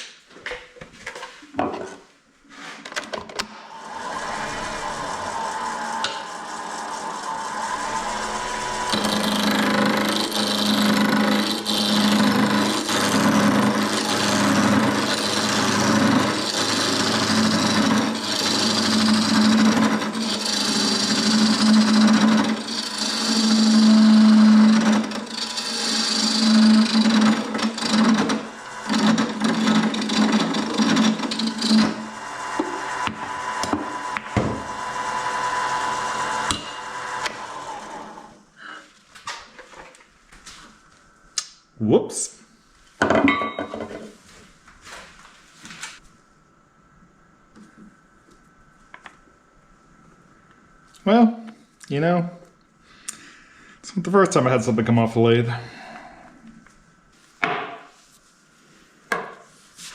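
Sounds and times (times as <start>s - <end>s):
lathe low hum: 3.4s - 38.4s
gouge scraping wood on lathe: 3.8s - 38.2s.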